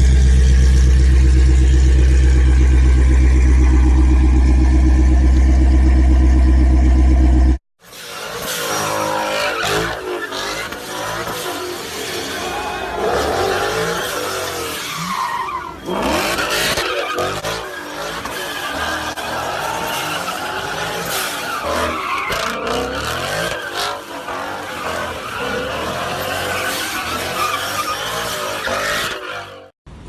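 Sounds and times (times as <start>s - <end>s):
car engine droning and revving: 0.0s - 7.6s, 8.2s - 29.7s
tyres squealing: 8.4s - 29.7s.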